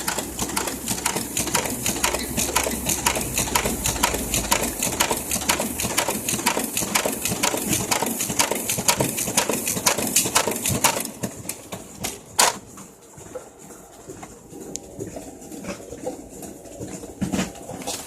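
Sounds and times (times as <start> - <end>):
photocopier clattering: 4.5 - 12.8.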